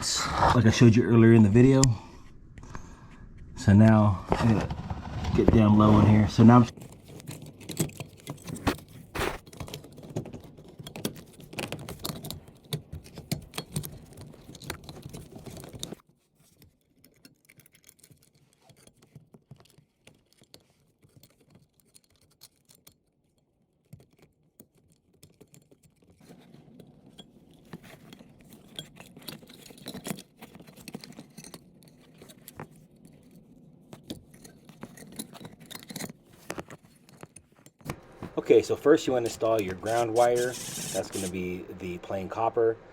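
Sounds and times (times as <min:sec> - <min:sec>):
hands scraping and rubbing: 0:08.4 - 0:09.4, 0:37.9 - 0:42.7.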